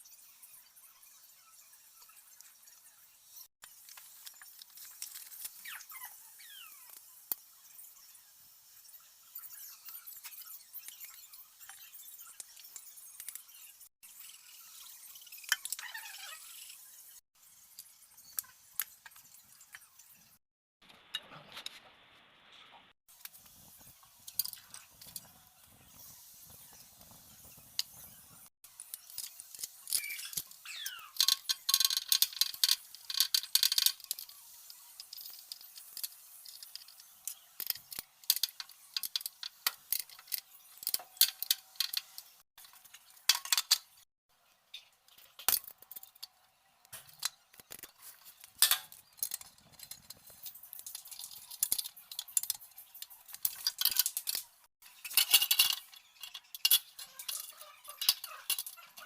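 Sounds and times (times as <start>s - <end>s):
metal tools clinking: 47.0s - 59.0s.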